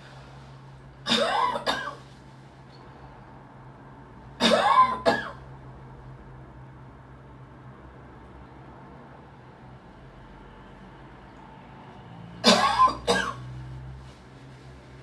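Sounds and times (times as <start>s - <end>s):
person coughing: 1.1s - 2.0s, 4.4s - 5.4s, 12.4s - 13.4s.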